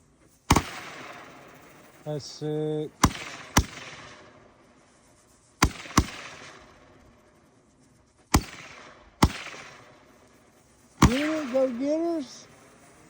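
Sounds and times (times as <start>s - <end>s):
roman candle bangs: 11.0s - 12.8s.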